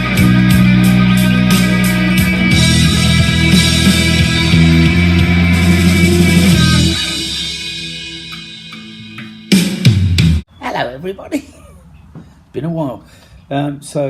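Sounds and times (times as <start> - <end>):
rock music with electric guitar: 0.0 - 10.4.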